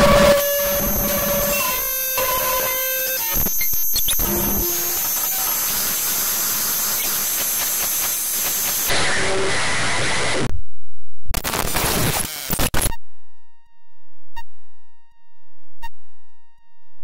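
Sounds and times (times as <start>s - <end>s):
held electronic tones: 0.0s - 6.1s.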